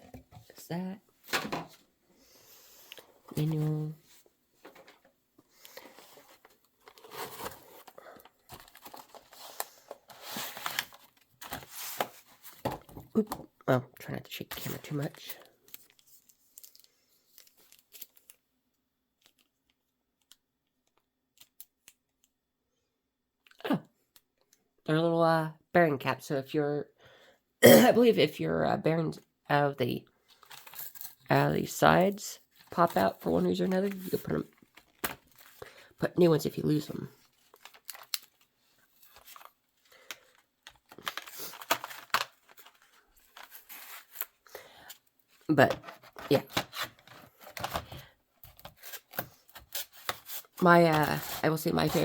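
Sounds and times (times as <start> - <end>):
plastic packaging rustling: 3.4 - 13.0, 15.0 - 18.4, 32.4 - 36.0, 37.2 - 52.0.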